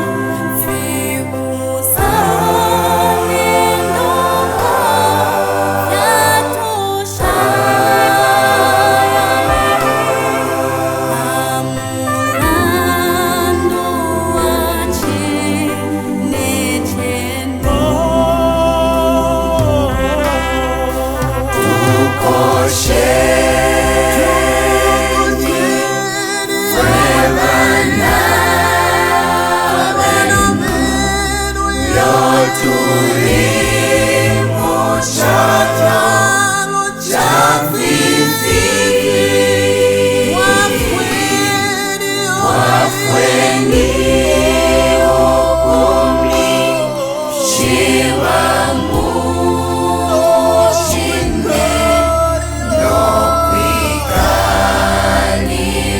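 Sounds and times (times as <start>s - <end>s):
low bass line: 0.0s - 36.6s, 37.2s - 55.9s
choir singing gospel: 0.0s - 55.9s.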